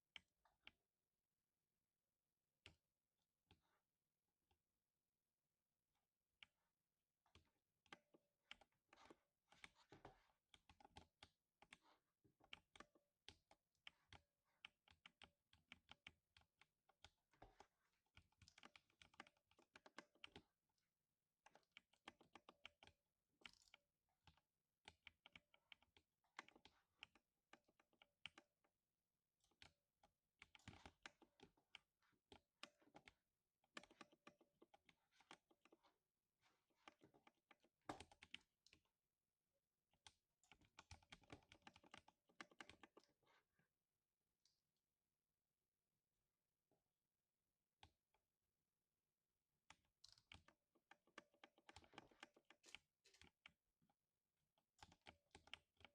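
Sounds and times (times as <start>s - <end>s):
typing on mechanical keyboard: 49.7s - 53.6s.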